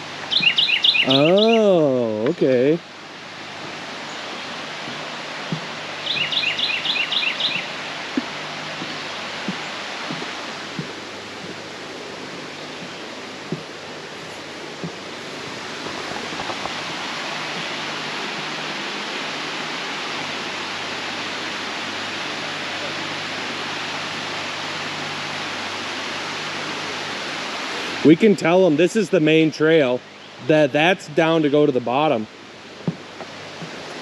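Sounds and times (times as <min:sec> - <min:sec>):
rushing outdoor noise: 0:00.0 - 0:34.0
bird chirping: 0:00.3 - 0:02.4, 0:05.5 - 0:07.9
soft thumps: 0:04.8 - 0:06.3, 0:07.5 - 0:16.9, 0:32.8 - 0:33.8.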